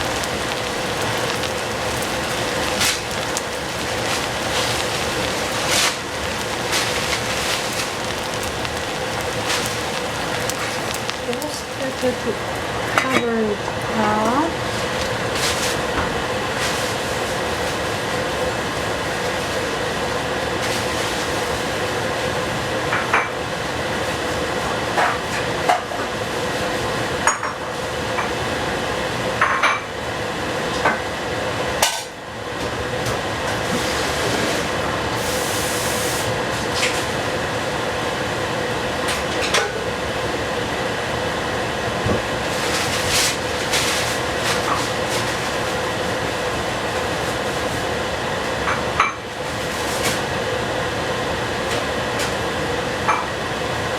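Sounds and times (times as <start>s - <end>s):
food hissing in a pan: 0.0s - 13.0s, 33.6s - 38.5s, 42.3s - 48.6s, 49.4s - 50.6s
steady hum: 0.0s - 20.6s.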